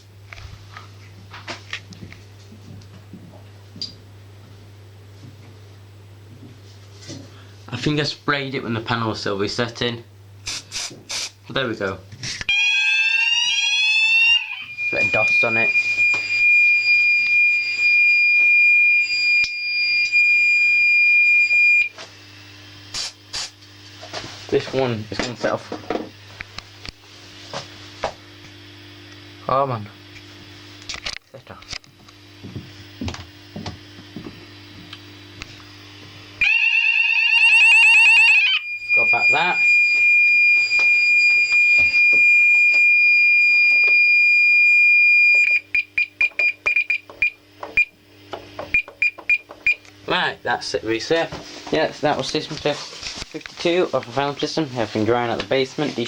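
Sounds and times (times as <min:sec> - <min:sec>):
fire alarm high-pitched tone: 0:12.5 - 0:21.9, 0:36.4 - 0:48.0.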